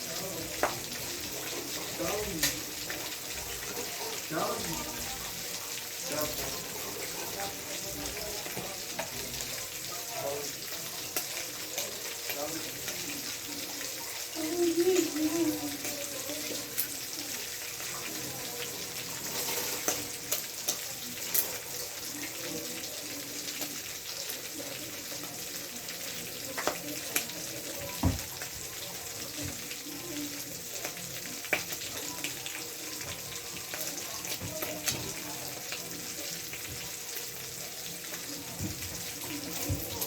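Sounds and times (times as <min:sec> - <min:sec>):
tap water running into sink: 0:26.4 - 0:30.1, 0:38.5 - 0:40.0.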